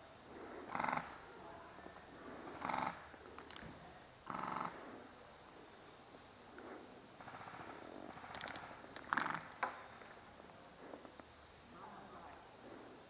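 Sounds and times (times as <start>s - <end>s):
faint clicks: 3.3s - 3.7s, 8.1s - 10.1s
airsoft rifle bursts: 7.2s - 10.0s.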